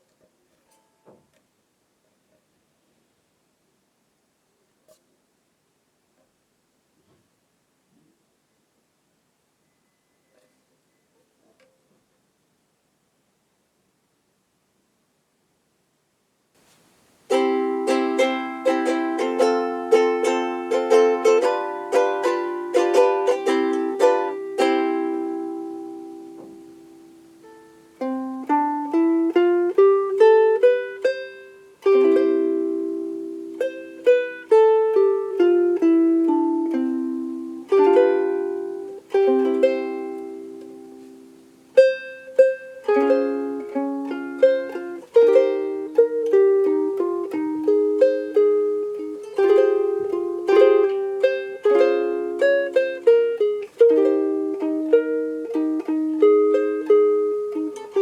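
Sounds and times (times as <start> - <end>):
ukulele playing: 17.2 - 58.0.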